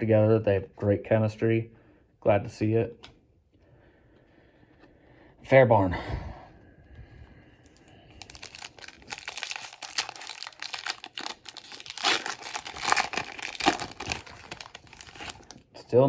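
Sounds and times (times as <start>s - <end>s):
plastic wrapper tearing and crinkling: 7.7s - 15.6s.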